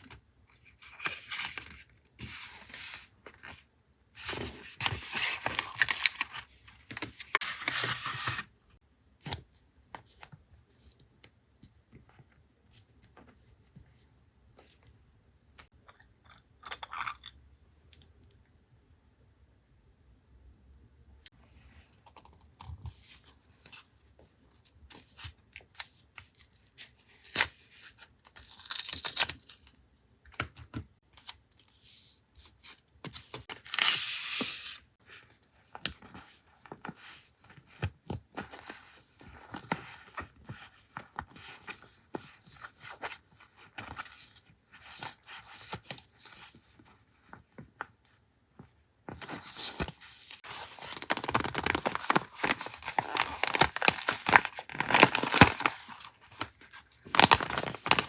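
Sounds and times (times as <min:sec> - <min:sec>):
paper rustling and tearing: 0:49.3 - 0:56.5.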